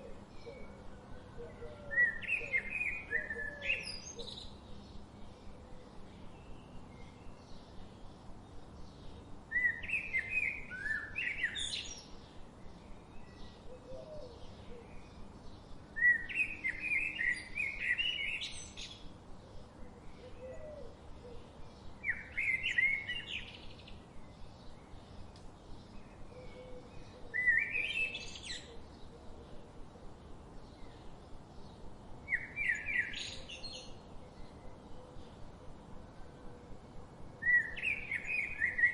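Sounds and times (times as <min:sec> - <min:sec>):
faint bird chirps: 0:00.0 - 0:29.7.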